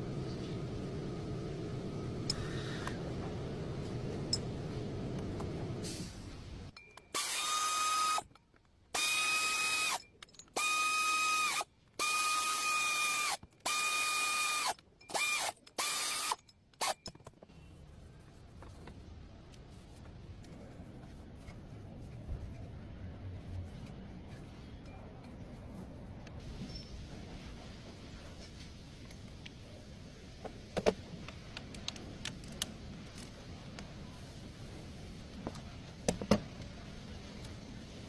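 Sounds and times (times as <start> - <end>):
steady low rumble: 0.0 - 6.8
power tool motor whine: 7.2 - 8.2, 10.6 - 17.0.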